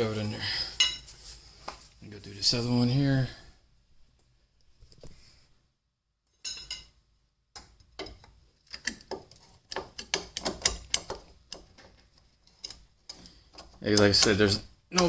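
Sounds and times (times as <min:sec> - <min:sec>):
metal clicks and knocks: 0:07.6 - 0:15.0.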